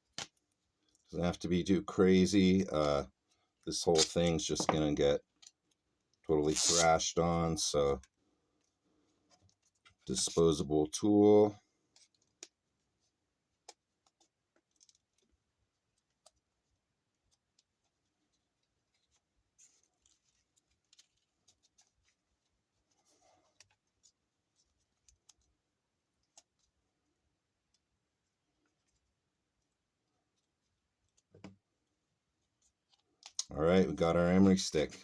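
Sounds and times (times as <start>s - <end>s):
emery paper and tape rustling: 2.1s - 7.8s, 11.8s - 27.9s.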